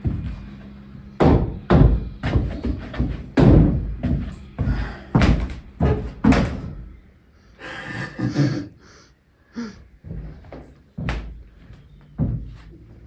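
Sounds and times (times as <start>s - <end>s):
sharp knocks and bangs: 1.2s - 6.8s.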